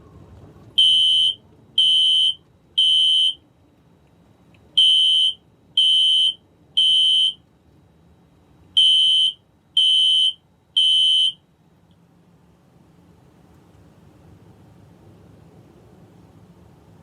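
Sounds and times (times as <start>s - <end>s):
smoke alarm beeping: 0.8s - 3.4s, 4.8s - 7.4s, 8.8s - 11.4s.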